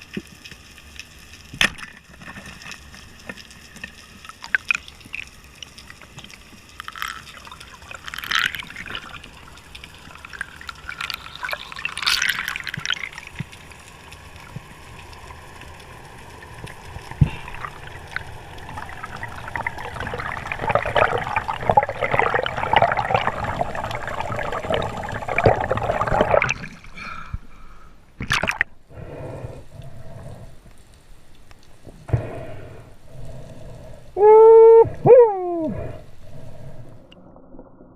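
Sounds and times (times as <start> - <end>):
water trickling and gurgling: 0.0 - 27.3
dense crackling: 0.0 - 27.5.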